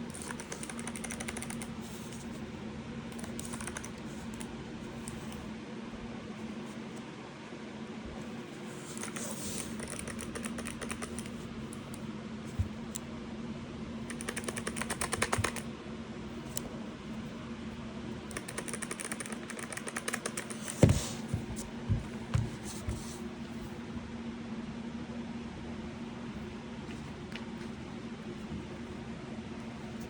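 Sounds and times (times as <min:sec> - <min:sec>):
mechanical keyboard keys clicking: 0:00.1 - 0:01.7, 0:03.2 - 0:04.5, 0:09.0 - 0:12.0, 0:14.1 - 0:15.7, 0:18.3 - 0:20.7.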